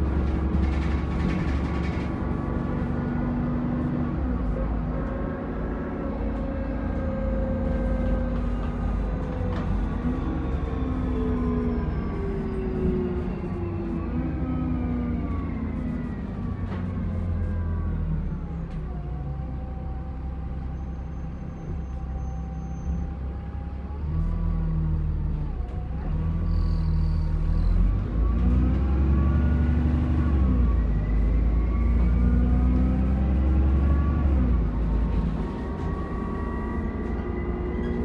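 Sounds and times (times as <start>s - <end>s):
turbocharger whine: 0.0s - 19.0s, 26.7s - 38.0s
bus diesel engine droning: 0.0s - 38.0s.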